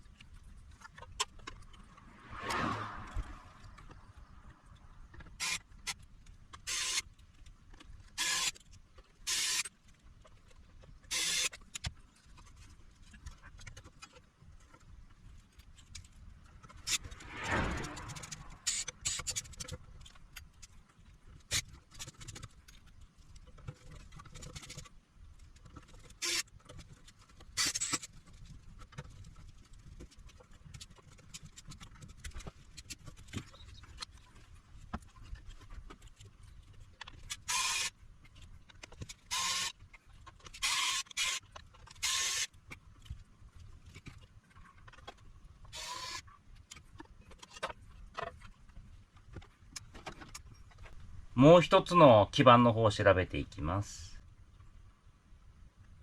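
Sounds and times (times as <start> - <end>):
hissy scrapes: 1.8 - 4.3, 16.6 - 19.6.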